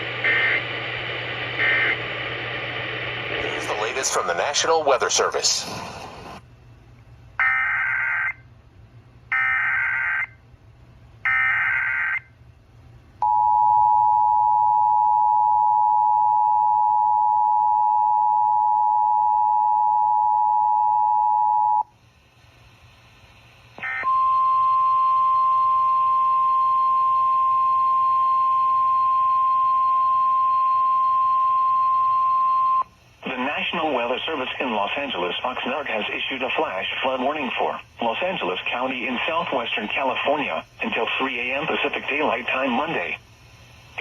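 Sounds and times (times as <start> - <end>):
steady warning tone: 0.0 - 2.2, 23.8 - 32.9
buzzing data bursts: 1.6 - 2.0.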